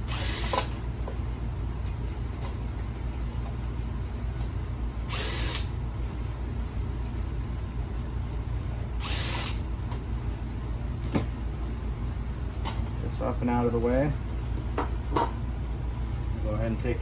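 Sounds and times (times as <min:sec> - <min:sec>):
power screwdriver whirring: 0:00.1 - 0:00.8, 0:05.1 - 0:05.7, 0:09.0 - 0:09.6.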